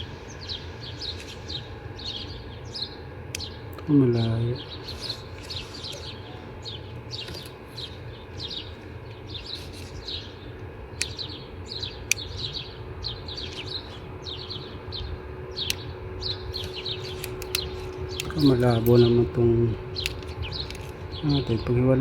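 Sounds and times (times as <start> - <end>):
low background rumble: 0.0 - 22.0
small birds chirping: 0.0 - 22.0
sharp clicks: 12.0 - 12.5, 15.6 - 15.9, 16.6 - 19.1, 20.0 - 21.0.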